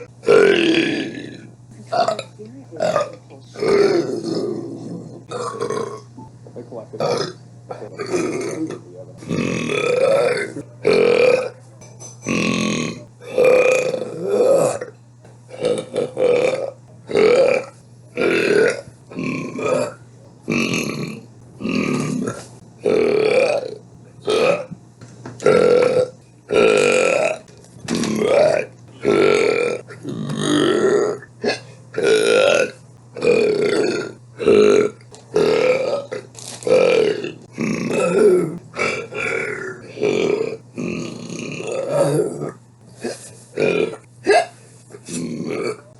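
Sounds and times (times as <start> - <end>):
woman burping: 25.4 - 45.9.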